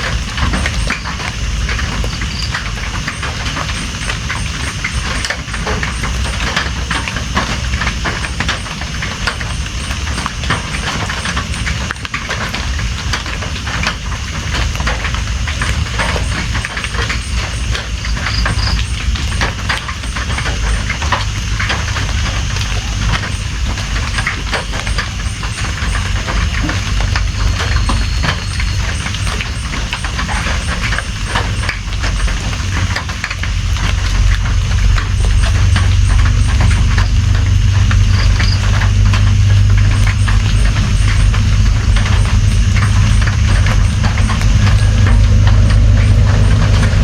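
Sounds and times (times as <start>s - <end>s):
heavy rain: 0.0s - 47.0s
raindrops hitting close by: 0.0s - 47.0s
low rumble: 31.9s - 47.0s.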